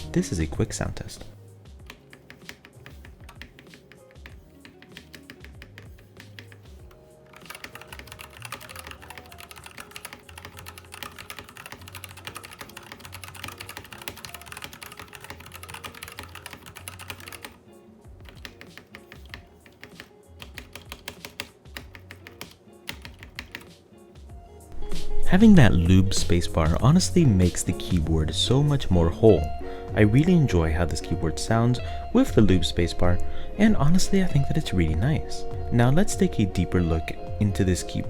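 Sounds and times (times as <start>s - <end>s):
background music: 0.0s - 38.0s
mechanical keyboard typing: 1.8s - 17.6s, 18.2s - 23.7s.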